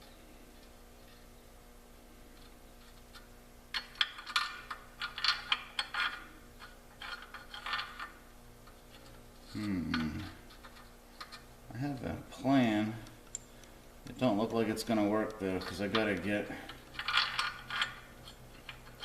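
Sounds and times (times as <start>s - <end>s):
metal tools clinking: 14.9s - 19.0s.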